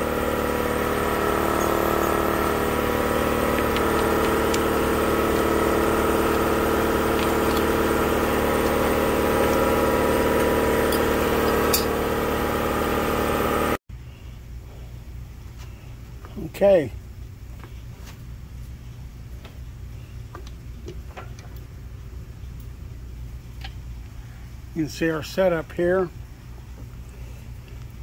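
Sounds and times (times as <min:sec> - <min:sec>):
spindle motor running: 0:00.0 - 0:13.8.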